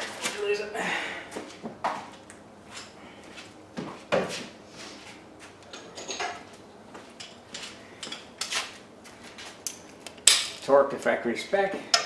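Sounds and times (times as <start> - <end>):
tools knocking and clattering: 5.7 - 6.5.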